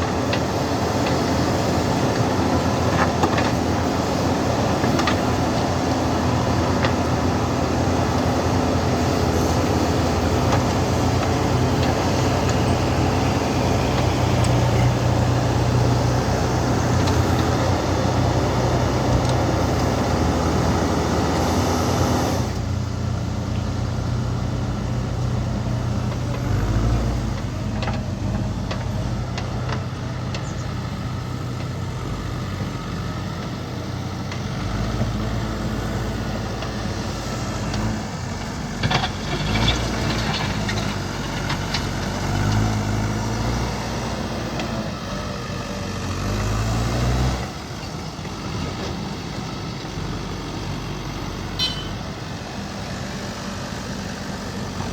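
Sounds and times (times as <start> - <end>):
diesel engine under load: 0.0 - 54.9
knocks and clanks: 51.6 - 52.0.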